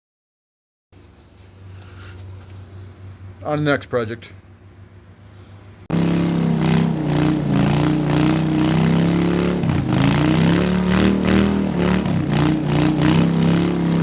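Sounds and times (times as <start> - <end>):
engine running steadily: 4.2 - 14.0.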